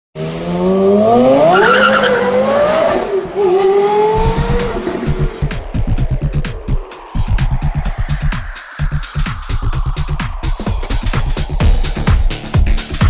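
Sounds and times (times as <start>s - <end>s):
car engine accelerating: 0.2s - 10.0s
electronic dance music: 4.2s - 13.0s.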